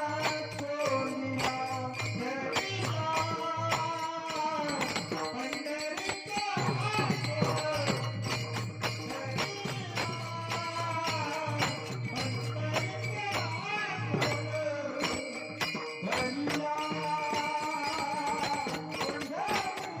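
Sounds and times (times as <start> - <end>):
jingling percussion beat: 0.0 - 20.0
melodic singing voice: 0.0 - 20.0.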